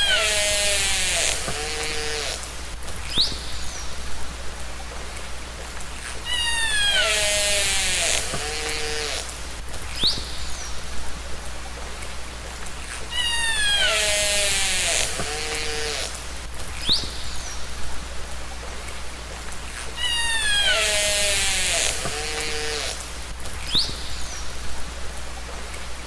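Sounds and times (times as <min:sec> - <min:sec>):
steady hiss: 0:00.0 - 0:26.0
orca whistles and squeals: 0:06.2 - 0:08.2, 0:13.1 - 0:15.0, 0:20.0 - 0:21.9.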